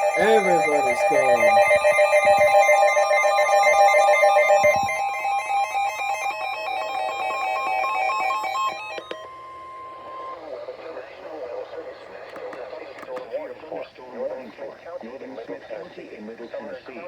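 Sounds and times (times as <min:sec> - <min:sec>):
steady alert tone: 0:00.0 - 0:07.2
fast multi-tone beeping: 0:00.0 - 0:10.5.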